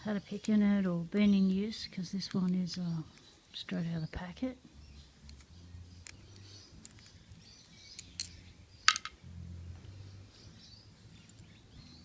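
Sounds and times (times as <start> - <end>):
metallic clicks of padlock parts: 5.2 - 9.2.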